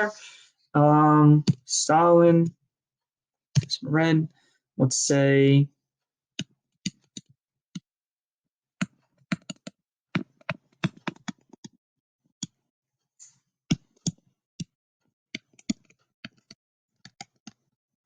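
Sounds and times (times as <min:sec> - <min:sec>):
computer keyboard typing: 0:08.8 - 0:11.7, 0:15.4 - 0:17.6.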